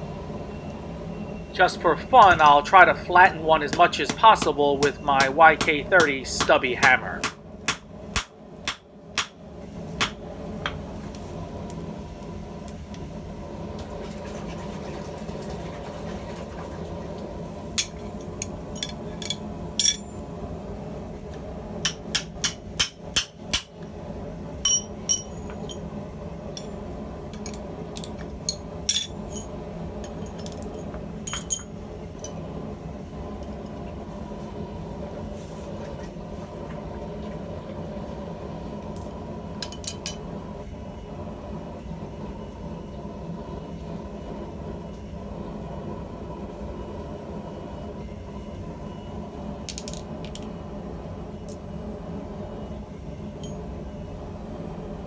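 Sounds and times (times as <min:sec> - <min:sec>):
steady low hum: 0:00.0 - 0:13.8, 0:17.2 - 0:55.0
hammer striking metal rivet: 0:02.2 - 0:02.7, 0:03.6 - 0:09.4, 0:10.0 - 0:10.3, 0:18.8 - 0:20.1, 0:21.9 - 0:23.8, 0:24.7 - 0:25.8, 0:27.4 - 0:29.5.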